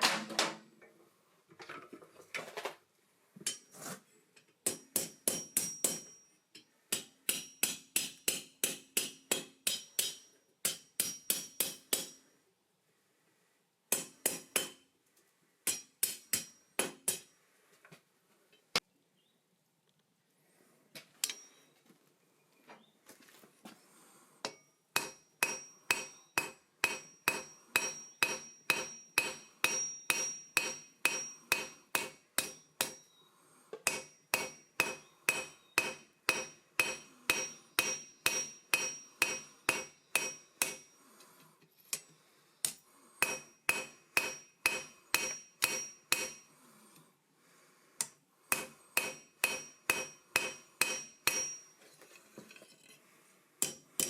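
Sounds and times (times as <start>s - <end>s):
hammer ringing on anvil: 4.7s - 6.3s, 6.9s - 12.2s, 24.5s - 33.2s, 33.8s - 41.0s, 43.2s - 46.5s, 48.5s - 51.8s.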